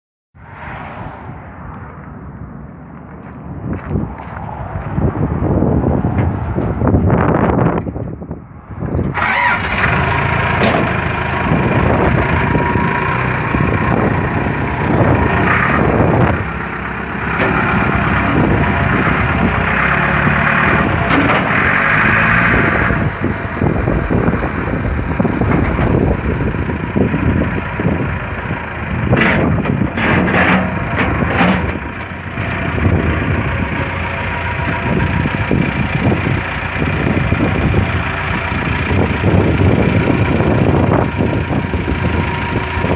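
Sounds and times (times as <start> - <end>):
diesel engine running: 0.8 - 42.9
clanks and knocks: 27.8 - 32.7.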